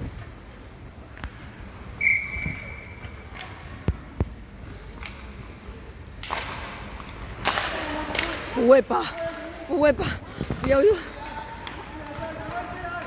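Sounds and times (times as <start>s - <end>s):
referee's whistle: 2.0s - 3.0s.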